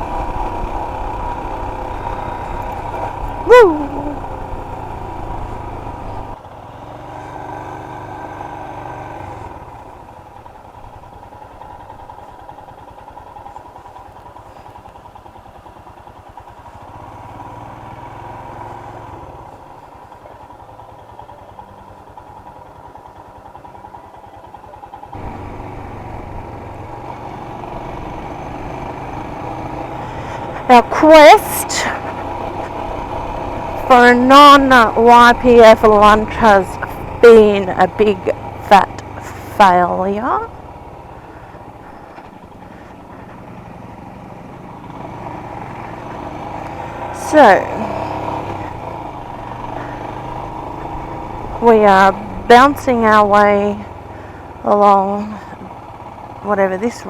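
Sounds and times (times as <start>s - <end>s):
motorcycle engine humming: 0.0s - 57.0s.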